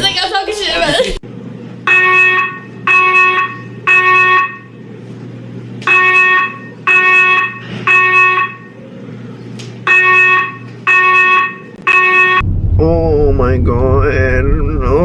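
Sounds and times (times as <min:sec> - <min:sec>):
buzzy electronic beeps: 0:09.9 - 0:12.4.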